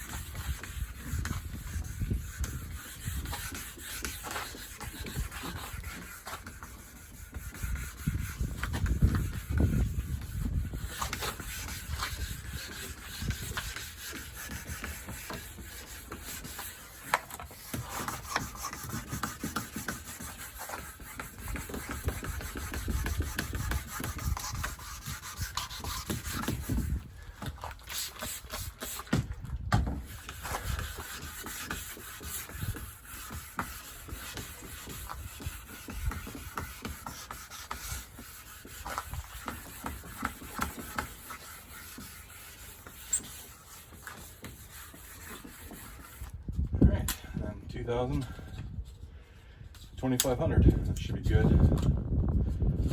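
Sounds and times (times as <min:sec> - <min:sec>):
sandpaper rubbing on car paint: 0:00.0 - 0:47.4.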